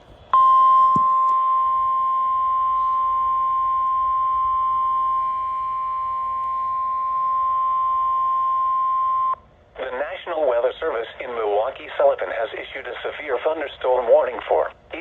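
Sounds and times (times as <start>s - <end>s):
steady alarm tone: 0.3s - 9.4s.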